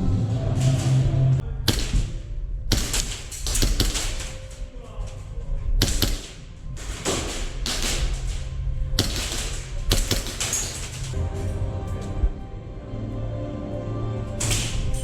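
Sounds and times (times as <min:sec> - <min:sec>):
airsoft gun shots: 0:01.7 - 0:04.4, 0:05.8 - 0:11.2.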